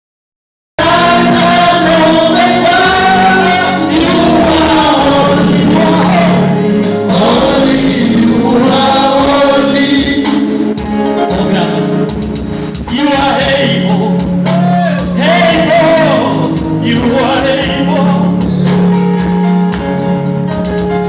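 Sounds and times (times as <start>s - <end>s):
gospel choir singing: 0.8s - 20.0s.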